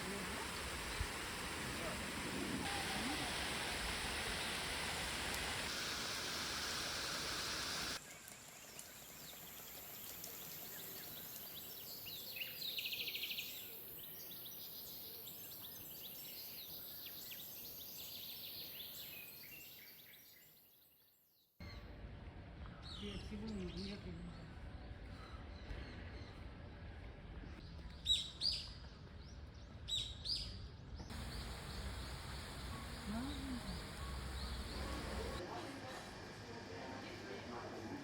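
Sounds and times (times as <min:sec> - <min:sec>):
thin high hiss: 0:00.0 - 0:08.0, 0:31.1 - 0:35.4.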